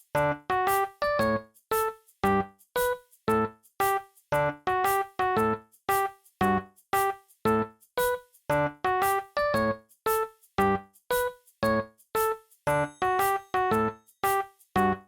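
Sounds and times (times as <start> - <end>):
bouncy keyboard tune: 0.0 - 15.0.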